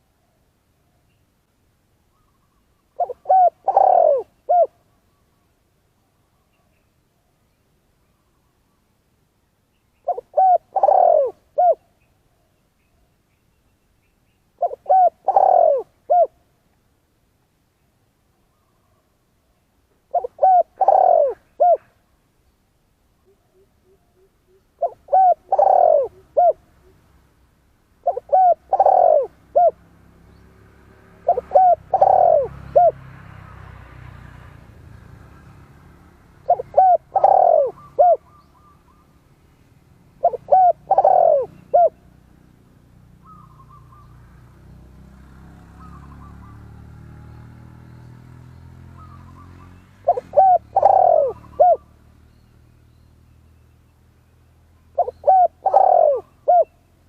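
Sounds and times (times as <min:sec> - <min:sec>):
faint bird chirping: 0:00.0 - 0:16.8, 0:17.6 - 0:30.7, 0:36.4 - 0:42.6, 0:43.2 - 0:44.6, 0:45.6 - 0:57.0
dove cooing: 0:02.2 - 0:04.8, 0:10.0 - 0:11.9, 0:14.6 - 0:16.4, 0:20.1 - 0:22.0, 0:23.2 - 0:27.0, 0:28.0 - 0:29.8, 0:31.2 - 0:33.0, 0:36.4 - 0:39.0, 0:40.2 - 0:42.1, 0:43.2 - 0:44.2, 0:45.8 - 0:46.7, 0:49.0 - 0:52.0, 0:55.0 - 0:56.9.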